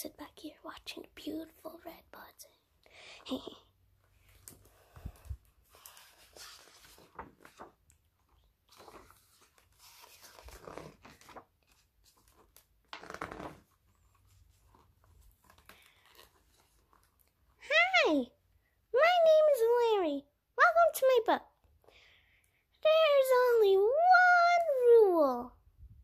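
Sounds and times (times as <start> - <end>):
paper pages rustling: 4.2 - 17.5.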